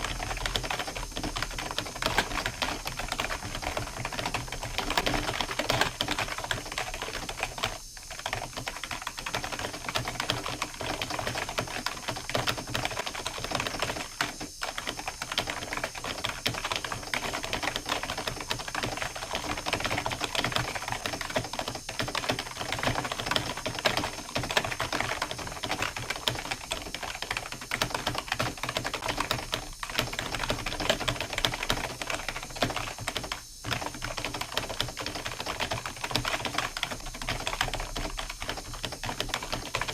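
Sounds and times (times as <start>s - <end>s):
keyboard typing clicks: 0.1s - 7.3s.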